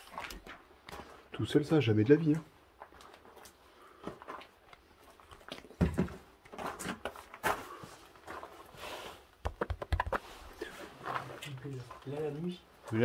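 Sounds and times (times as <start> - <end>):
knocks and thumps in a room: 5.7 - 6.3, 9.4 - 10.2.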